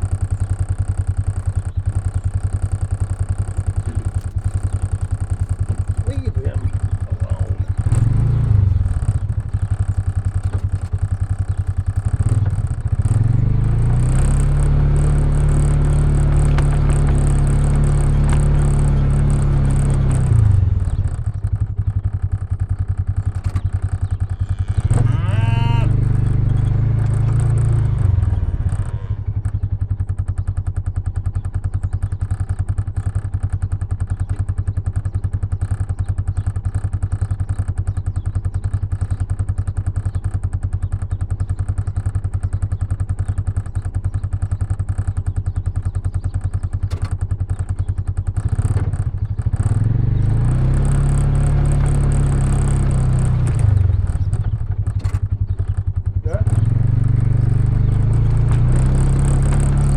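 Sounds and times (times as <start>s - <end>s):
engine running: 0.0s - 59.9s
cattle mooing: 24.4s - 26.3s, 28.6s - 29.4s.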